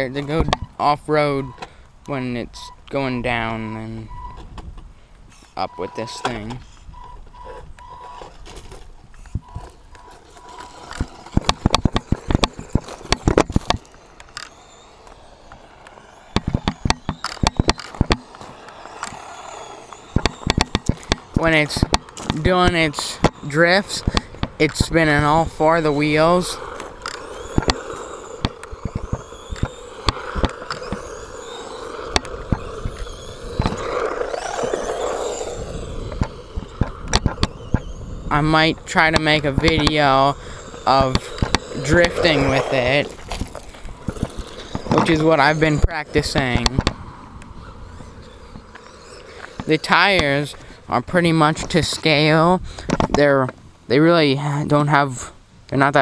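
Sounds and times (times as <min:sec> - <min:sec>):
sharp clicks from tyres and chassis: 0:00.0 - 0:53.8
toy truck clattering over ground: 0:06.1 - 0:47.0, 0:47.6 - 0:50.6.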